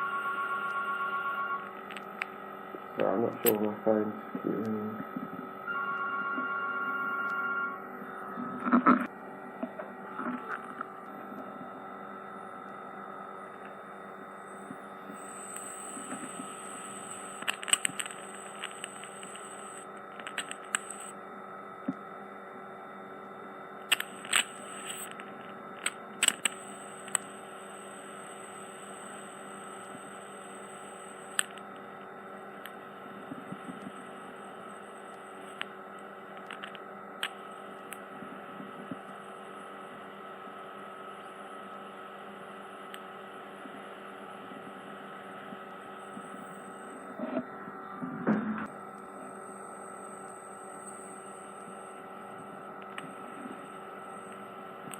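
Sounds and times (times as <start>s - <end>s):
electrical hum: 0.0s - 54.9s
sharp clicks and crackles: 1.6s - 3.6s, 14.6s - 21.1s, 23.8s - 38.0s, 48.9s - 54.9s.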